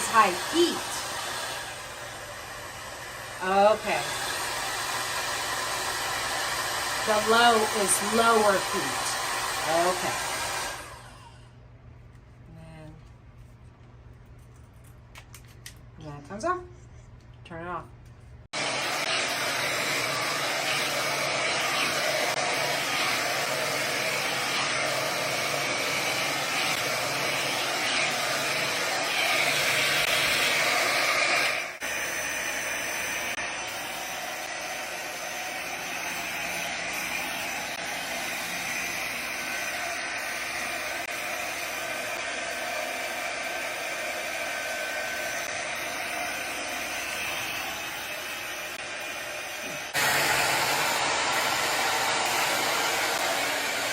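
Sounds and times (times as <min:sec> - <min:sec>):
hot air brush blowing: 0:00.0 - 0:11.4, 0:18.6 - 0:53.9.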